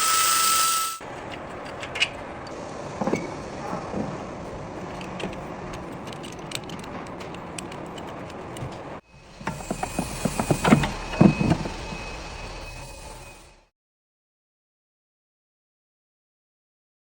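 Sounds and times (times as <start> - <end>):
faint high whine: 0.0 - 1.0, 9.1 - 13.7
steady background noise: 1.0 - 13.1
metallic clicks and knocks: 4.9 - 8.9.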